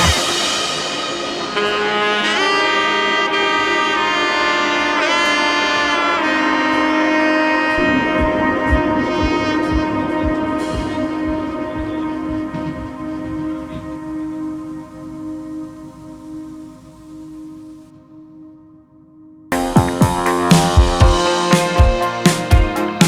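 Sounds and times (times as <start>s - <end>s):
low regular beat: 0.0s - 5.1s, 7.7s - 16.0s, 19.5s - 23.0s
held layered chord tones: 0.0s - 23.0s.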